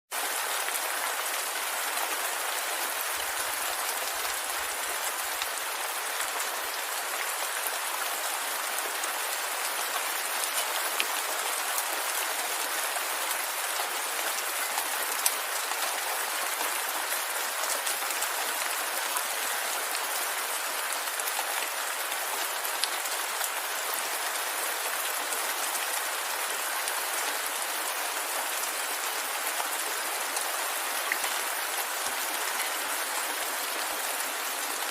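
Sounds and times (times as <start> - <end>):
steady rain hiss: 0.2 - 34.9
raindrops landing on surfaces: 31.1 - 34.9.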